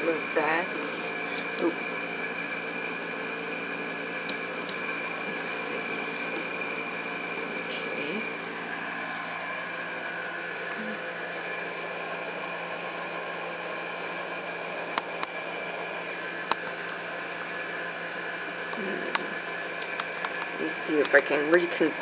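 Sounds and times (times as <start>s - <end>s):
steady mechanical hum: 0.0s - 22.0s
sharp clicks: 16.5s - 17.0s, 18.7s - 21.2s.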